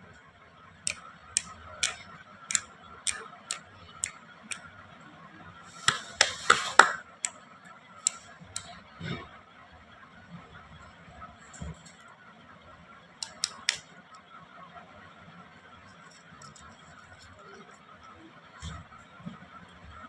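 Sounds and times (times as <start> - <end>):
sharp clicks: 0.9 - 3.6, 13.2 - 13.8.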